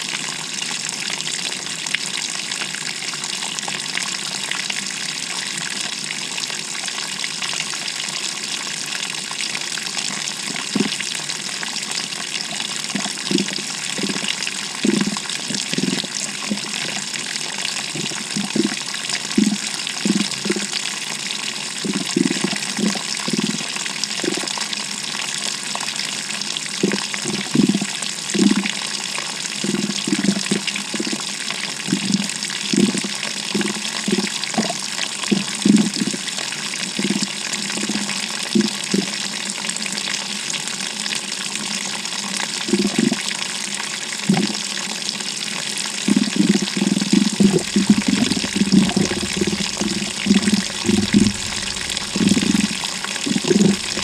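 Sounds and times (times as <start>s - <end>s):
water rushing into washing machine: 47.3s - 54.0s
low sloshing thumps: 47.4s - 54.0s.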